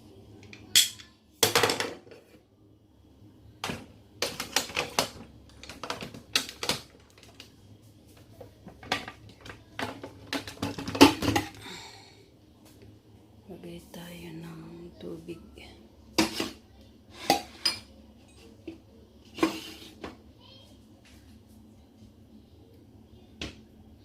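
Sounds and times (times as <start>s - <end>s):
plastic clicks and clatters: 3.6s - 7.5s, 8.7s - 11.6s.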